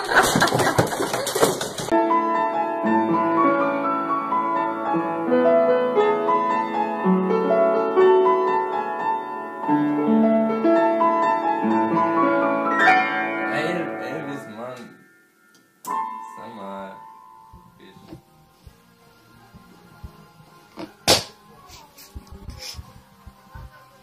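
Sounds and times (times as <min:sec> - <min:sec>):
noisy clatter: 0:00.0 - 0:01.9.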